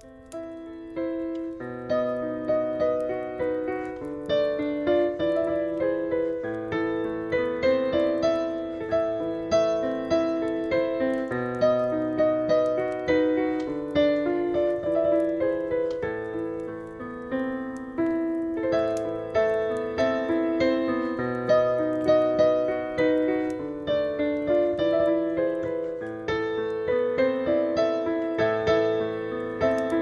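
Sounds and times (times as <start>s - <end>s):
solo piano melody: 0.0s - 30.0s
wood fire crackling: 0.0s - 30.0s.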